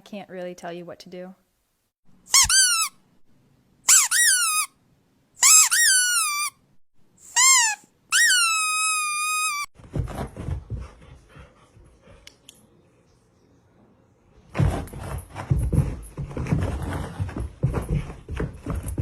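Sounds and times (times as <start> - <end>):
high-pitched squeaks: 2.3 - 3.0, 5.4 - 6.6, 7.3 - 9.7.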